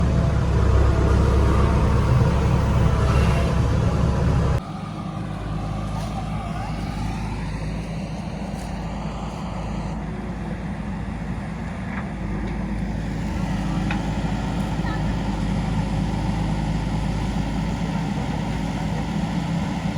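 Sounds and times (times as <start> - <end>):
diesel engine running under load: 0.0 - 19.9.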